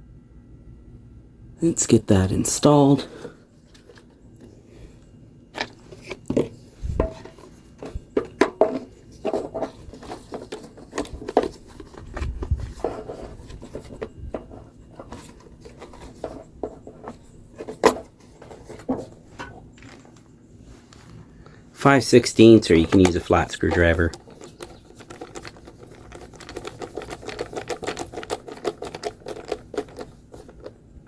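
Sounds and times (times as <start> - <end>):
plastic and metal parts clicking: 22.4 - 30.8.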